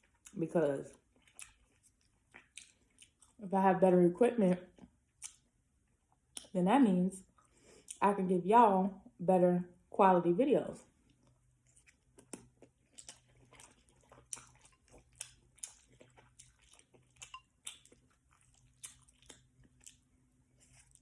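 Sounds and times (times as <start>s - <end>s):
close chewing with mouth clicks: 0.0s - 3.4s, 4.6s - 5.5s, 6.2s - 6.5s, 7.2s - 8.0s, 11.0s - 21.0s.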